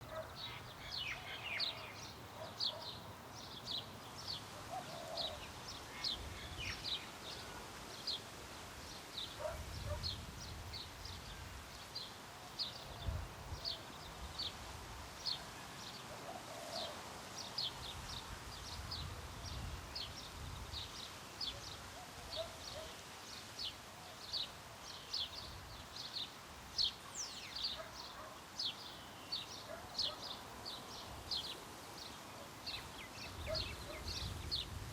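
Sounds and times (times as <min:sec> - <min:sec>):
light wind: 0:00.0 - 0:34.9
small birds chirping: 0:00.0 - 0:34.9.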